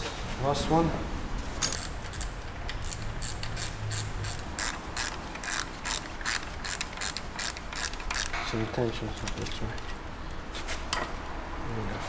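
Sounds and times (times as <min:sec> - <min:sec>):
ratchet wrench clicking: 0:01.6 - 0:10.0.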